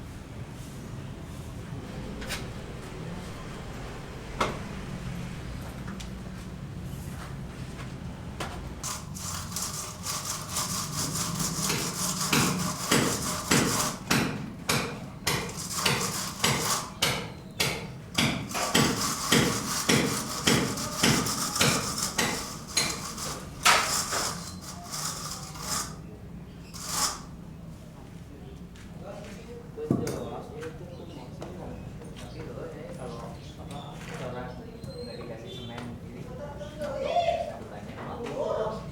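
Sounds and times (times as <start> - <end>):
hand tool strokes on building material: 8.8 - 26.1, 26.7 - 27.4.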